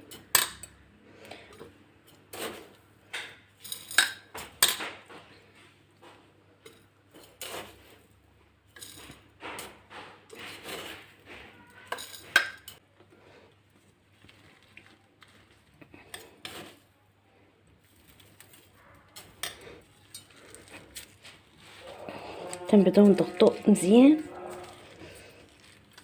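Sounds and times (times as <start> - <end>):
spoon clinking against glass jar: 11.9 - 12.8.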